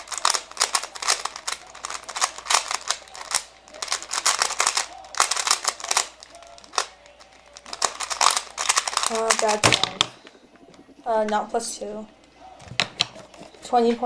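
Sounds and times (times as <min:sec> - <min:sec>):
puzzle cube clattering clicks: 0:00.0 - 0:11.0.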